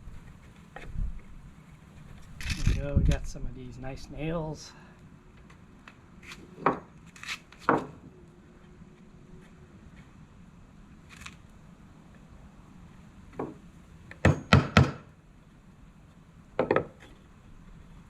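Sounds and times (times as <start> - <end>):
hammer driving nails into wood: 14.1 - 15.1.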